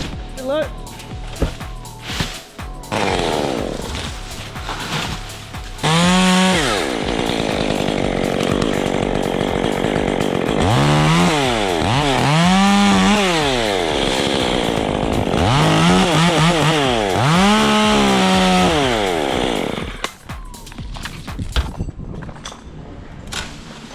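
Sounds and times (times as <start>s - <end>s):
chainsaw engine revving: 2.9s - 20.2s.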